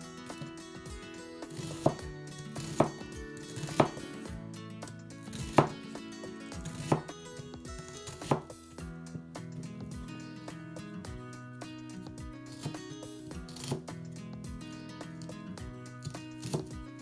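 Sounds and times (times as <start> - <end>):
background music: 0.0 - 17.0
knife chopping on cutting board: 1.6 - 2.0, 2.6 - 4.1, 5.3 - 5.8, 6.7 - 7.1, 8.0 - 8.5, 13.5 - 13.8, 16.4 - 16.7.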